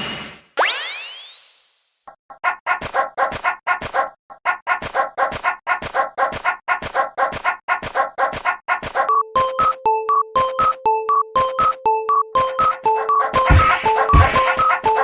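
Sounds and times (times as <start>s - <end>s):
dog-like yapping barks: 2.4s - 9.1s.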